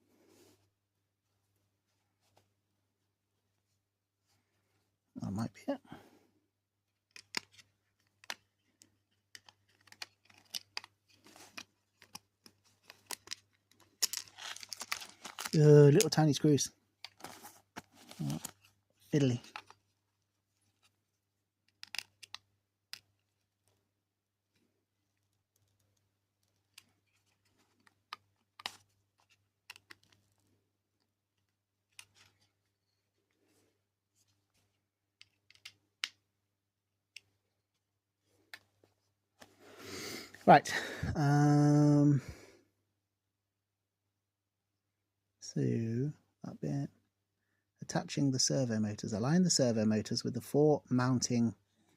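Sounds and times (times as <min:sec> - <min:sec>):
small plastic parts clicking: 0:07.1 - 0:16.1, 0:21.6 - 0:23.2, 0:25.2 - 0:30.4, 0:35.2 - 0:36.2.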